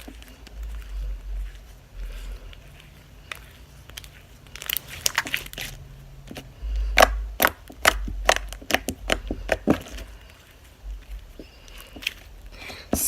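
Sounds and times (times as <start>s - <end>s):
slime squishing with clicks and pops: 3.2s - 10.2s.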